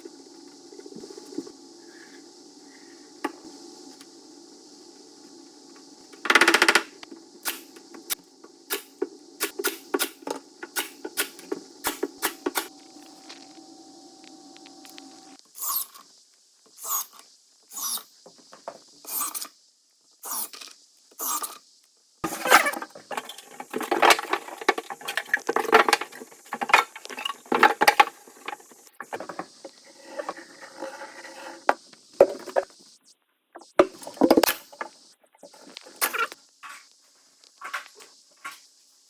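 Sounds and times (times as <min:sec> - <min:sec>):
scraping and knocking on wood: 0:22.2 - 0:32.7.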